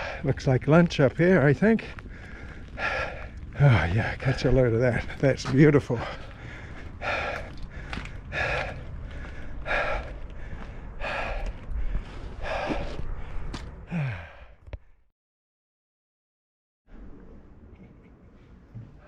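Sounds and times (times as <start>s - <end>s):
man breathing heavily: 0.0s - 0.5s, 1.6s - 15.0s
man sighing: 13.9s - 14.6s.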